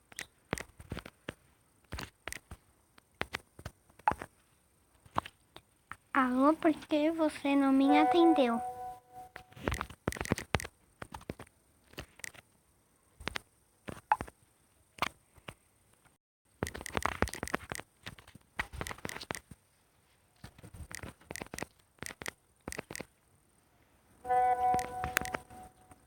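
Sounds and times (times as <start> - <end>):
sharp clicks and taps: 20.8 - 23.1, 24.7 - 25.6.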